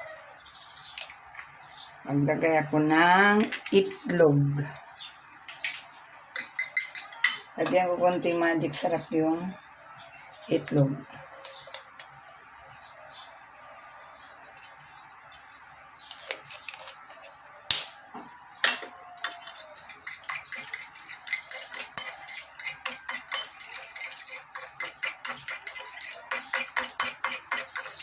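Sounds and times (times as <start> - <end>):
eggs beaten in a bowl: 19.2 - 28.0.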